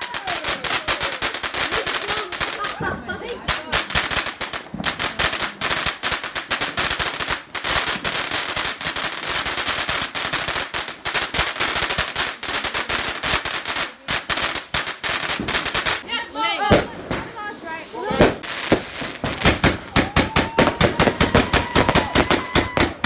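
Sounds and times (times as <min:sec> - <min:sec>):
fireworks crackling bangs: 0:00.0 - 0:23.0.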